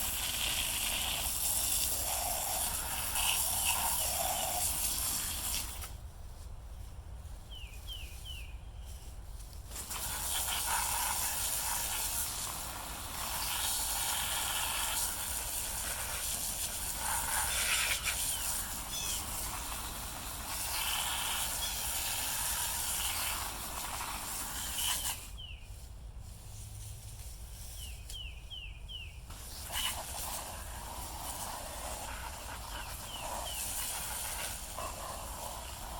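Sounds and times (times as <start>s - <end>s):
water spraying from hose nozzle: 0.0s - 6.0s, 9.7s - 25.4s, 29.3s - 35.9s
bird chirping: 7.4s - 9.1s, 17.8s - 19.6s, 24.8s - 25.8s, 27.6s - 29.3s, 32.8s - 34.0s.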